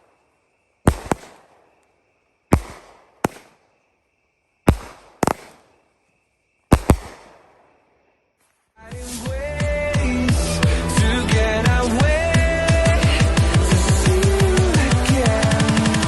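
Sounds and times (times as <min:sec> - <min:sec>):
fireworks sharp reports: 0:00.0 - 0:00.2, 0:00.8 - 0:01.9, 0:02.5 - 0:03.8, 0:04.7 - 0:06.0, 0:06.7 - 0:08.0
fireworks launch thumps: 0:00.9 - 0:01.9, 0:02.5 - 0:03.8, 0:04.7 - 0:05.8, 0:06.7 - 0:07.8.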